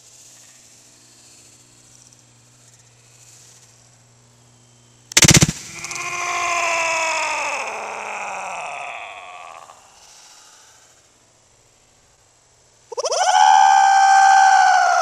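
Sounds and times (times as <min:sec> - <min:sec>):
person hollering: 0:05.7 - 0:10.0, 0:13.0 - 0:15.0.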